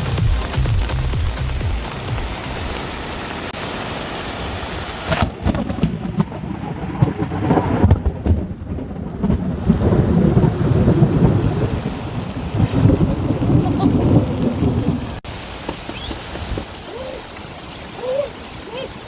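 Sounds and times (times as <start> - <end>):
rain falling: 0.0 - 19.0
rolling thunder rumble: 5.0 - 16.8.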